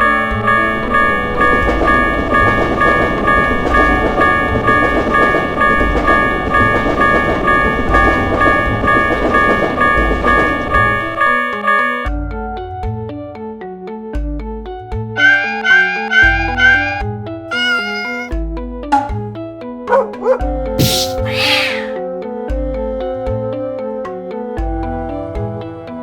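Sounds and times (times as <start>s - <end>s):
passing train rumble: 0.0s - 11.7s
railway crossing alarm ringing: 0.0s - 12.2s, 15.2s - 18.3s.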